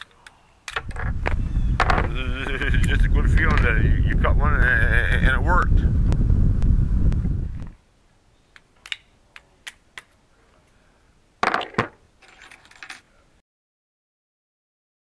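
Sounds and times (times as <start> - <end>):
keys clicking and jingling: 12.2 - 13.1.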